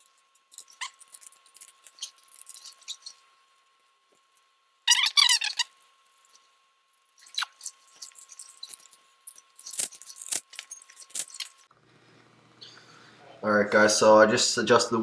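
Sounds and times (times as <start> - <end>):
metal drive chain clinking: 7.2 - 11.7.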